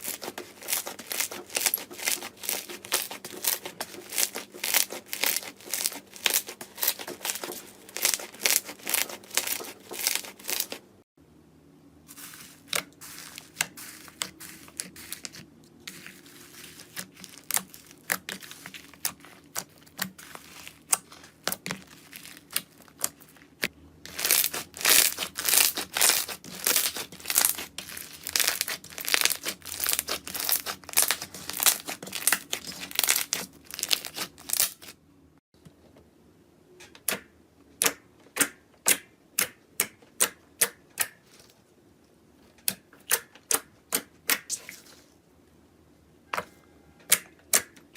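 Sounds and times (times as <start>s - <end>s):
slime crackling and popping: 0.0s - 10.8s, 13.6s - 34.9s.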